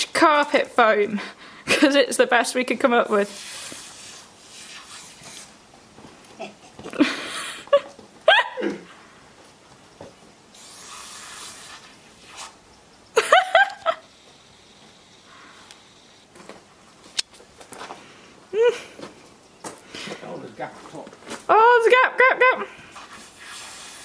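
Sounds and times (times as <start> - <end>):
aerosol can spraying: 3.1 - 5.6, 10.5 - 12.6, 22.9 - 24.0.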